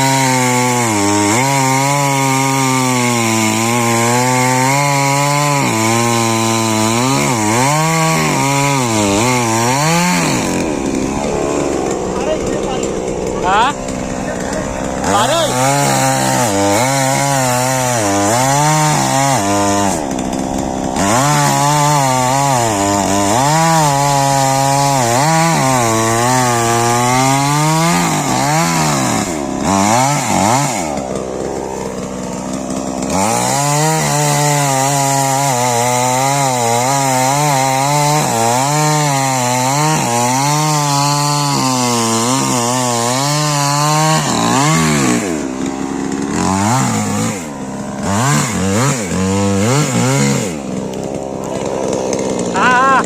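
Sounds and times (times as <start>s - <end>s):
chainsaw cutting wood: 0.0s - 53.0s.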